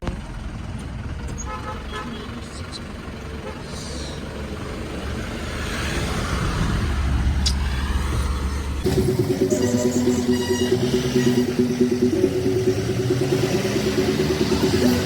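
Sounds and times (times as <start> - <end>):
car engine rumble: 0.0 - 15.0
fast pulsing hum: 8.8 - 15.0.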